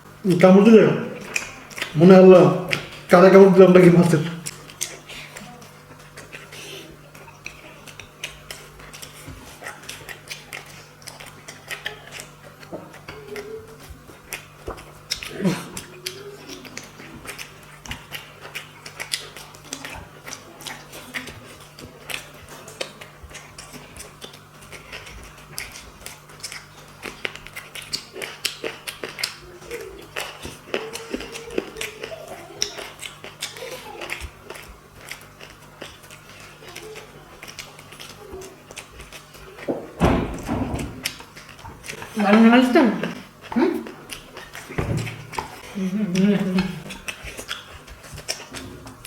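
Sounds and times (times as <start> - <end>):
wet chewing and lip smacks: 1.1 - 49.0.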